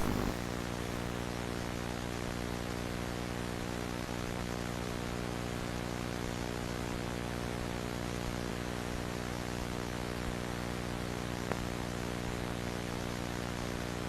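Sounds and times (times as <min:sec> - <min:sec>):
static hiss: 0:00.0 - 0:01.3
low electrical hum: 0:00.0 - 0:14.0.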